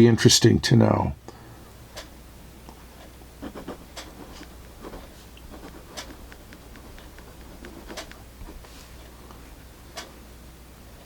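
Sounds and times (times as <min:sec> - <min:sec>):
pencil scratching on paper: 0:03.4 - 0:09.0.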